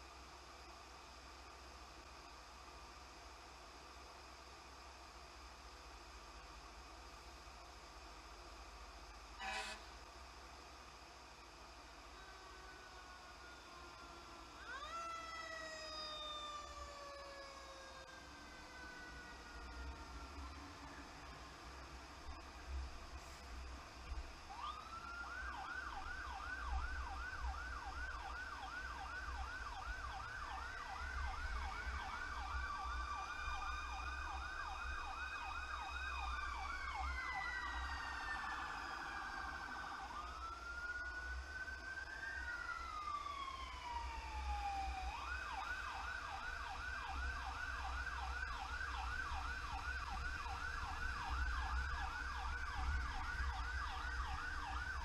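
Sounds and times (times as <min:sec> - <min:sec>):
siren wailing: 0:11.6 - 0:23.2, 0:23.9 - 0:55.0
siren yelping: 0:12.2 - 0:21.4, 0:24.5 - 0:55.0.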